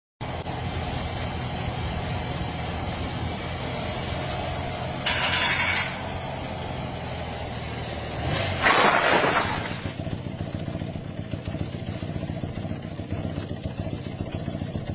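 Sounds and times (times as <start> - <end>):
motorcycle engine idling: 0.2 - 8.6, 9.4 - 14.9.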